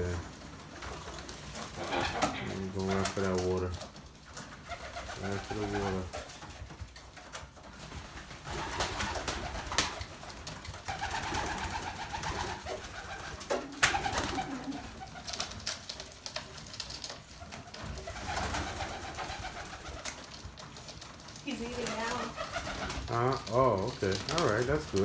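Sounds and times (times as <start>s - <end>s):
flock of birds calling: 1.2s - 3.4s.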